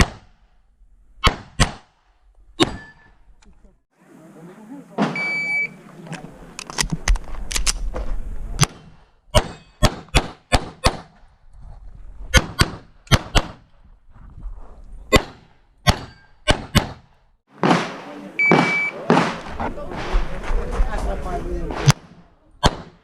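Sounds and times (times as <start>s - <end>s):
pistol shots: 8.6s - 11.1s, 17.6s - 19.7s, 21.7s - 23.0s.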